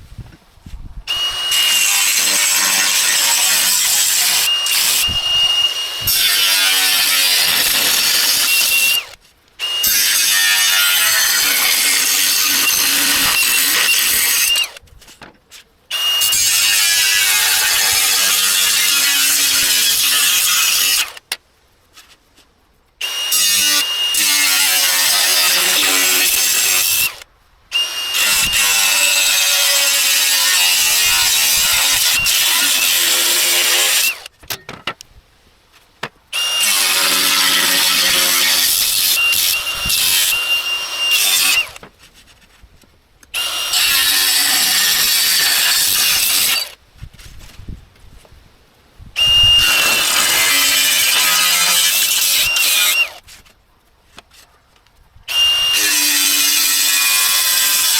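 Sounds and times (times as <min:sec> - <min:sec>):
power tool working on steel: 0:01.1 - 0:14.8, 0:15.9 - 0:21.2, 0:23.0 - 0:34.3, 0:36.4 - 0:41.8, 0:43.4 - 0:46.7, 0:49.2 - 0:53.2, 0:55.3 - 0:57.9.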